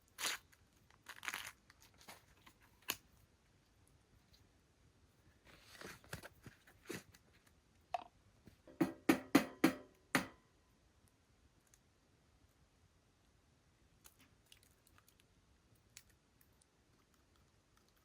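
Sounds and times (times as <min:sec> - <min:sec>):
soft rustling: 0:05.1 - 0:07.6
sharp taps on a pot: 0:08.7 - 0:10.4.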